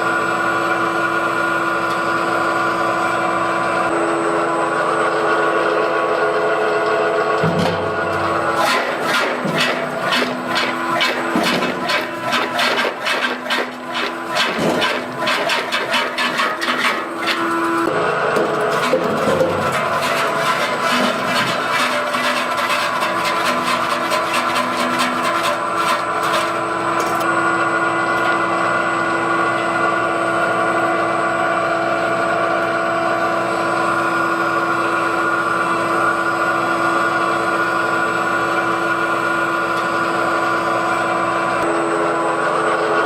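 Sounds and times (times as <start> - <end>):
dicing machine motor running: 2.0 - 30.8.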